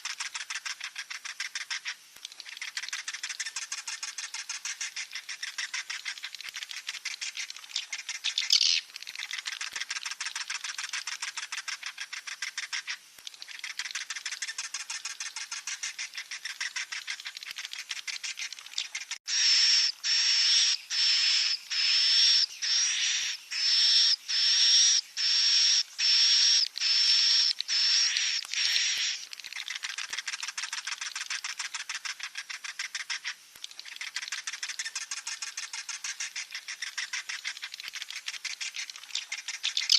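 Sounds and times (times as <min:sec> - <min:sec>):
loud long high bird calls: 0:19.3 - 0:29.2.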